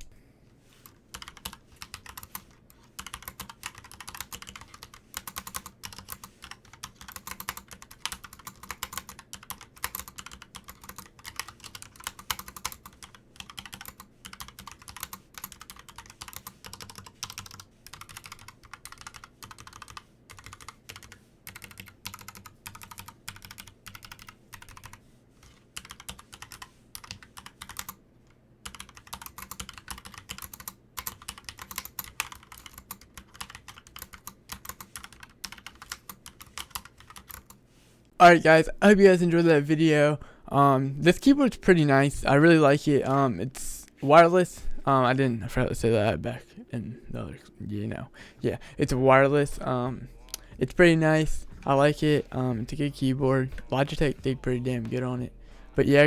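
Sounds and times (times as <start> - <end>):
mechanical keyboard typing: 1.1 - 25.0, 25.8 - 28.0, 28.6 - 37.6.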